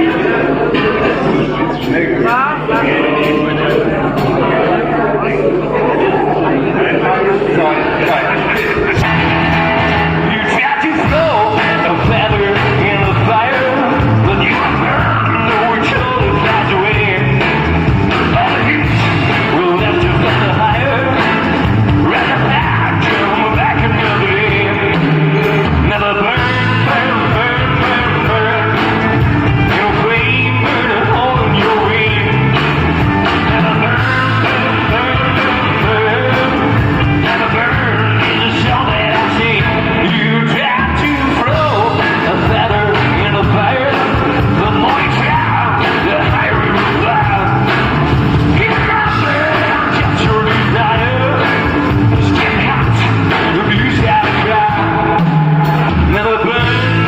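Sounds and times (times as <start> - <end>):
person singing: 0.0 - 57.0
rock band playing loudly: 0.0 - 57.0.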